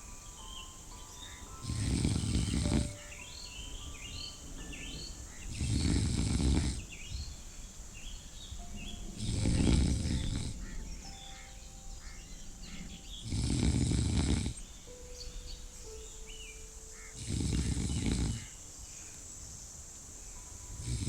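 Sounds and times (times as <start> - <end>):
faint birds chirping: 0.0 - 21.0
person snoring: 1.6 - 3.0, 5.5 - 6.9, 9.2 - 10.6, 13.2 - 14.6, 17.2 - 18.4, 20.8 - 21.0.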